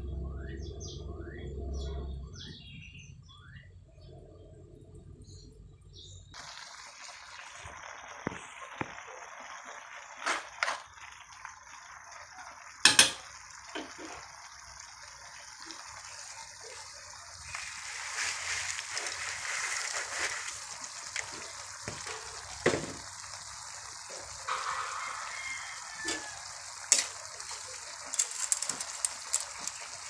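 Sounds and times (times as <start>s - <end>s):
steady watery hiss: 6.4s - 30.0s
kitchen knocks and clatters: 12.9s - 14.2s, 21.8s - 23.1s.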